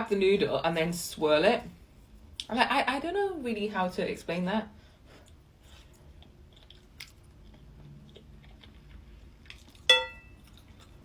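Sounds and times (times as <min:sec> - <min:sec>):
chewing noodles: 0:05.2 - 0:11.0
chopsticks clinking on ceramic bowl: 0:09.9 - 0:10.4.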